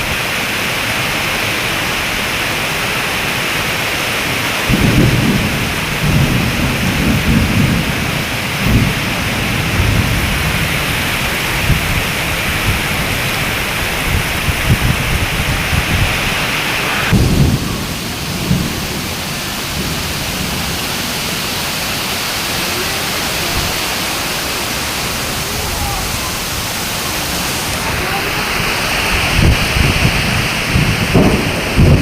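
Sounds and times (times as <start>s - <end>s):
heavy rain pouring: 0.0s - 32.0s
low rumbling: 4.6s - 32.0s.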